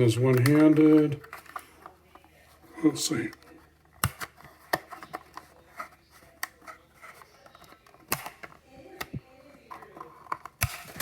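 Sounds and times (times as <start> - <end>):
plastic clicks and knocks: 4.0 - 11.0.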